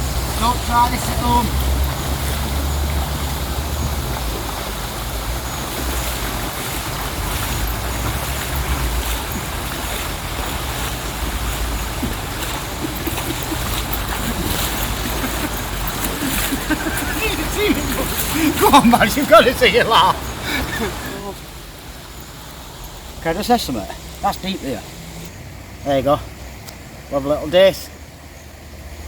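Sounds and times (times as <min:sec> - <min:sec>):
wind rumbling on microphone: 0:00.0 - 0:23.2
flowing river water: 0:00.0 - 0:29.0.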